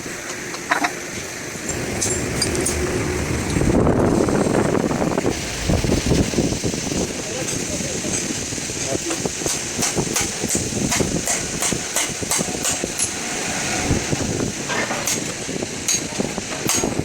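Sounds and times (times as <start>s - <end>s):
hammer tapping on metal: 9.4s - 13.2s.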